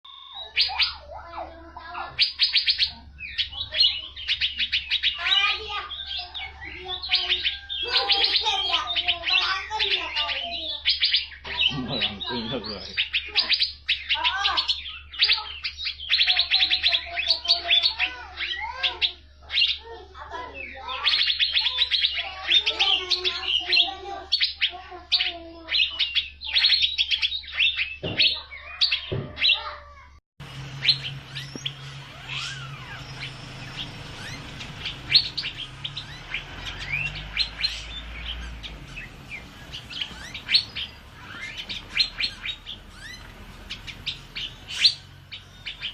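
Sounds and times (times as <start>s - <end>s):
bird chirping and warbling: 0.0s - 45.9s
low hum: 30.4s - 45.9s.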